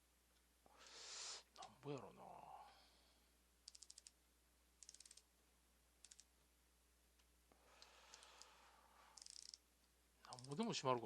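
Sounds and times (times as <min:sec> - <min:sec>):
socket ratchet clicking: 0:03.6 - 0:04.2, 0:04.8 - 0:05.3, 0:06.0 - 0:06.3, 0:09.2 - 0:09.6, 0:10.3 - 0:10.7.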